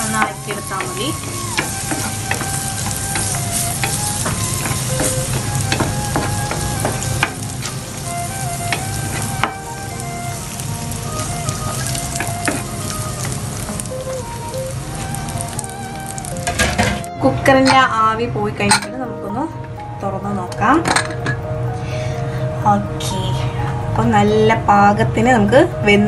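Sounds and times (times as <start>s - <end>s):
food sizzling in oil: 0.0s - 17.7s.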